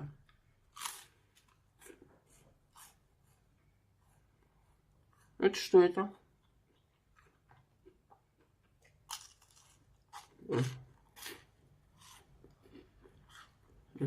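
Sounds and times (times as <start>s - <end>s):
toasted bread crunching: 8.9s - 10.3s.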